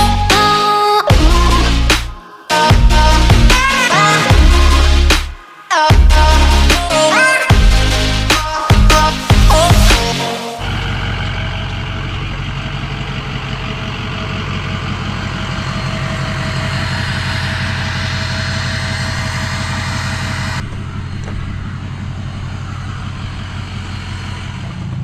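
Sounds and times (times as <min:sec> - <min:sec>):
pressure washer engine running: 0:10.6 - 0:25.0.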